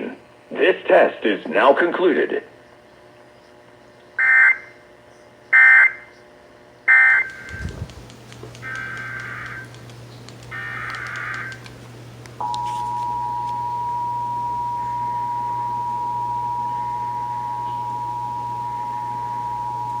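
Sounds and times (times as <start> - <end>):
low hum: 7.2 - 20.0
buzzy digital header tones: 8.5 - 9.7, 10.4 - 11.6
two-tone attention signal: 12.4 - 20.0.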